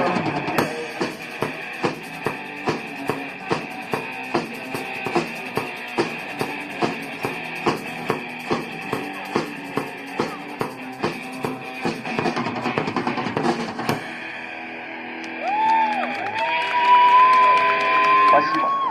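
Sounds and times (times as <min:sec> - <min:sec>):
drum kit beat and fill: 0:00.0 - 0:14.7
rock band playing: 0:00.0 - 0:18.3
guitar: 0:00.0 - 0:18.9.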